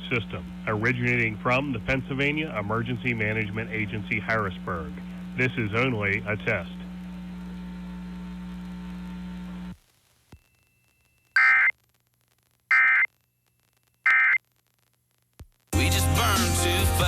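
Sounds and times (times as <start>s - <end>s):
steady electrical hum: 0.0s - 15.4s
digital data bursts: 11.4s - 11.7s, 12.7s - 13.1s, 14.0s - 14.4s.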